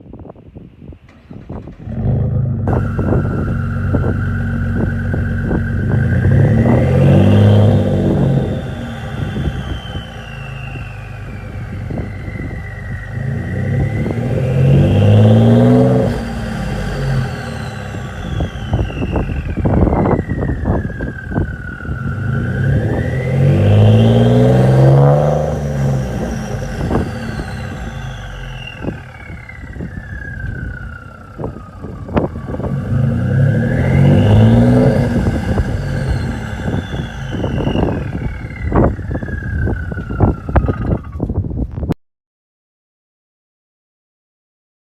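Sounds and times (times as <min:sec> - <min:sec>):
engine accelerating hard: 0:01.0 - 0:41.5
turbo whistle: 0:02.7 - 0:15.6, 0:33.9 - 0:40.8.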